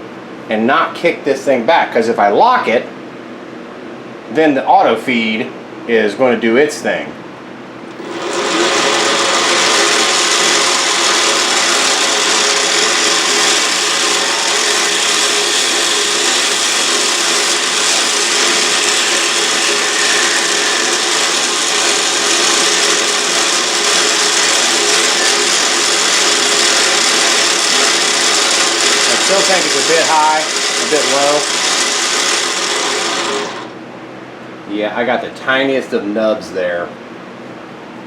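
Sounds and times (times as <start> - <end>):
cutting tool hissing: 7.9 - 33.7
lathe motor running: 7.9 - 33.8.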